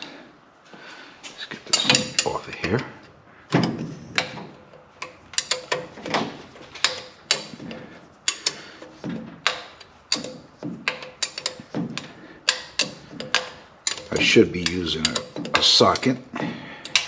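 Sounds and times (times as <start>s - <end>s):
wrench clicking against metal: 4.2s - 16.2s, 16.8s - 17.0s.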